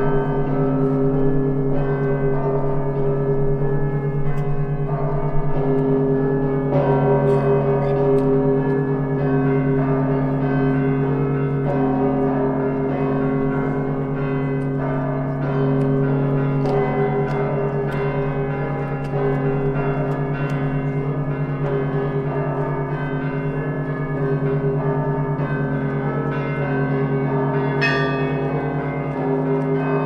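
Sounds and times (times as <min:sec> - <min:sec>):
low bell hum: 0:08.9 - 0:30.0.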